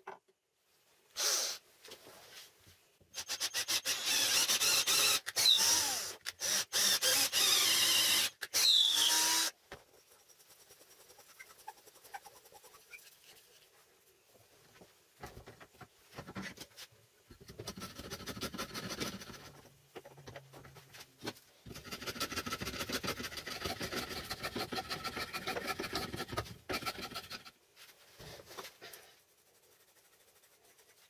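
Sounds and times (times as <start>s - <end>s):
scratching and rubbing on wood: 9.8s - 15.0s, 20.9s - 31.0s.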